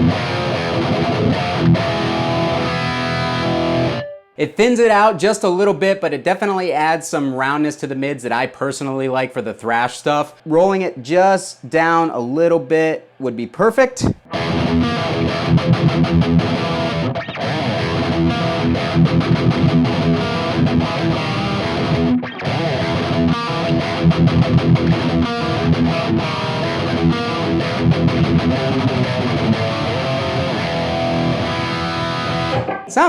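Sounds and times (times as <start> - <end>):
distorted electric guitar riff: 0.0 - 4.4, 13.8 - 33.0.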